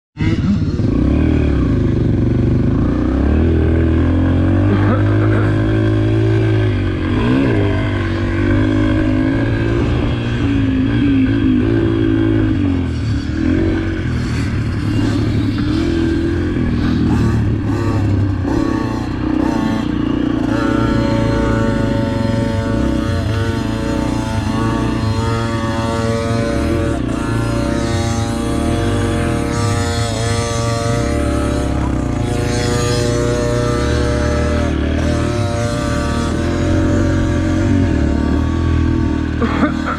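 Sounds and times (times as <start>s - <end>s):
dirt bike engine revving: 0.2s - 39.9s.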